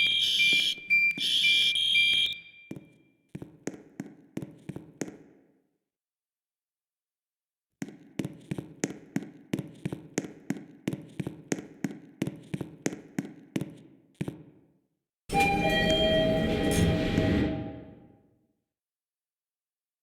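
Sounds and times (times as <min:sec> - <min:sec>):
fire alarm bell ringing: 0:00.0 - 0:02.8, 0:15.3 - 0:18.1.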